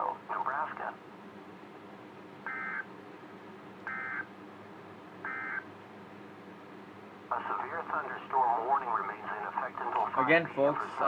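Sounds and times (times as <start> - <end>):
short bursts of digital data tones: 2.5 - 2.8, 3.9 - 4.3, 5.3 - 5.6.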